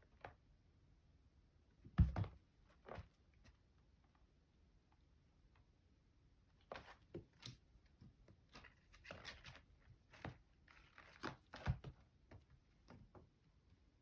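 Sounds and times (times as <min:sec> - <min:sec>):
thump: 0:02.0 - 0:02.4.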